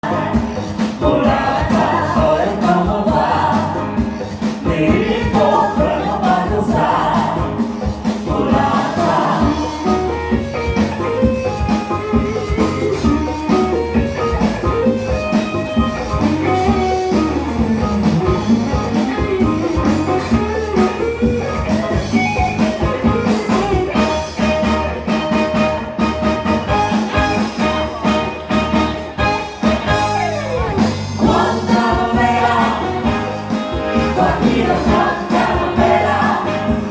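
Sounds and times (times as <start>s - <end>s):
music with steady beat: 0.0s - 36.9s.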